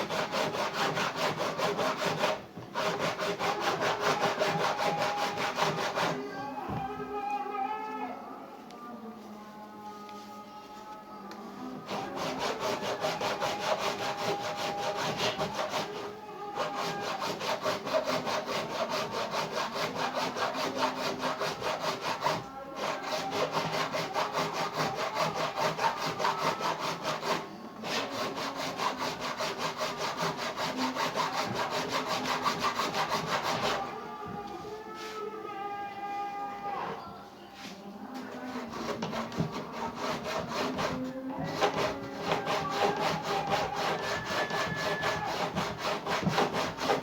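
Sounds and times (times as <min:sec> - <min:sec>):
saw cutting plastic: 0:00.0 - 0:06.3, 0:11.7 - 0:34.0, 0:38.2 - 0:47.0.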